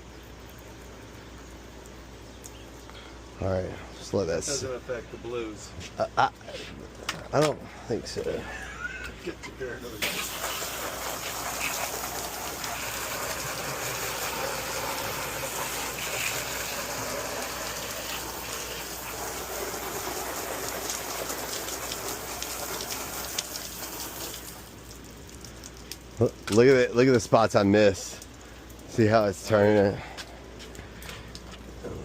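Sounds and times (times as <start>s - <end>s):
pump sprayer hissing: 7.9s - 32.0s.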